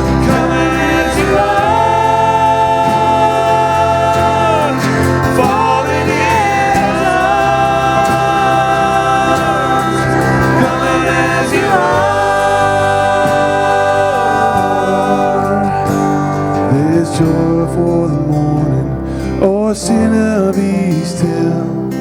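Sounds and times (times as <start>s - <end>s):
singers holding long notes: 0.0s - 18.8s
instrumental accompaniment: 0.0s - 22.0s.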